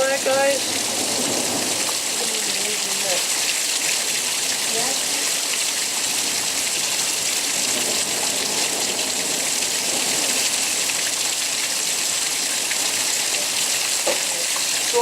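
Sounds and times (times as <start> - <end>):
heavy rain: 0.0 - 15.0.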